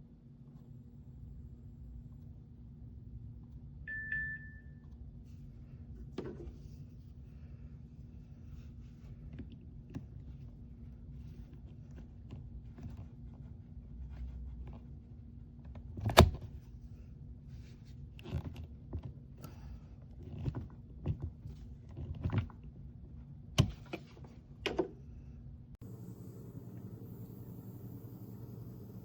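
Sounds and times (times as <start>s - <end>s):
low steady hum: 25.1s - 29.0s.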